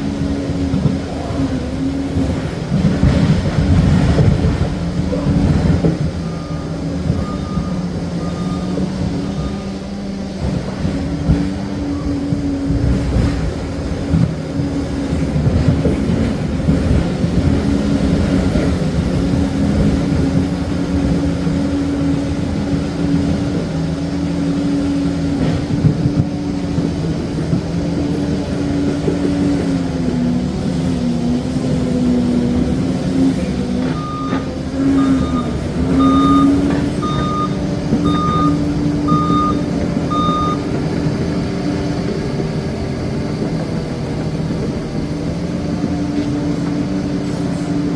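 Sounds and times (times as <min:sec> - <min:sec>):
dozer diesel engine running: 0:00.0 - 0:47.9
reversing alarm beeps: 0:06.2 - 0:09.8, 0:33.9 - 0:40.8.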